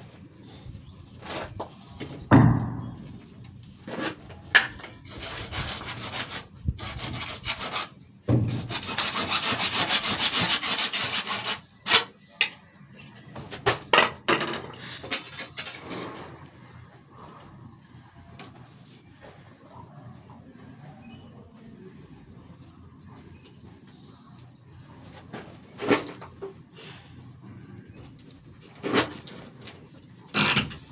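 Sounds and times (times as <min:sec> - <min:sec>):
scraping on hard material: 0:00.5 - 0:02.0, 0:02.6 - 0:12.1, 0:28.7 - 0:30.9
sharp knocks: 0:02.3 - 0:03.7.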